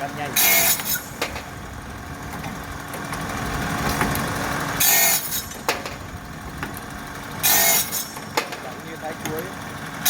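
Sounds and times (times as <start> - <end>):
cutting machine running: 0.0 - 10.0
loud cutting burst: 0.3 - 1.2, 7.4 - 8.2.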